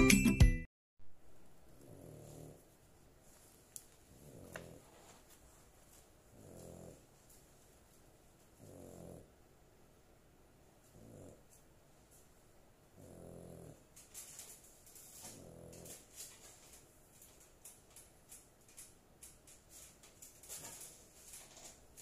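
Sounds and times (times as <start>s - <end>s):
dog snoring: 1.8s - 2.6s, 4.1s - 4.9s, 6.3s - 7.1s, 8.6s - 9.4s, 10.9s - 11.6s, 12.9s - 13.9s, 15.2s - 16.1s.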